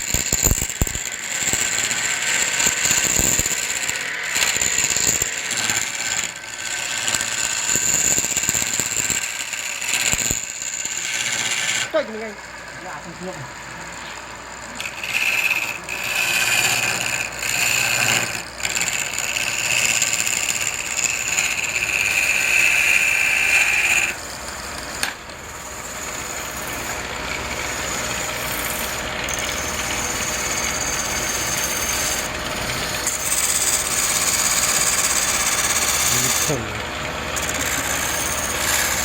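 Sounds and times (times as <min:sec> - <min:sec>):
turning tool cutting wood: 0:00.0 - 0:39.0
wood lathe running: 0:00.0 - 0:39.0.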